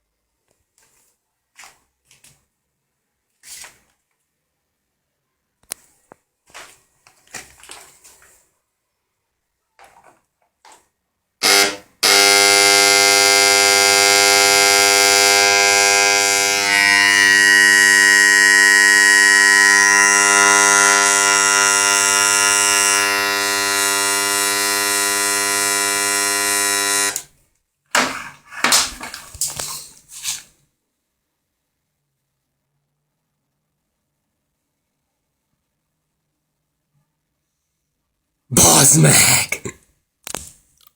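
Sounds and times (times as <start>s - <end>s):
loud electrical buzz: 11.4s - 27.3s.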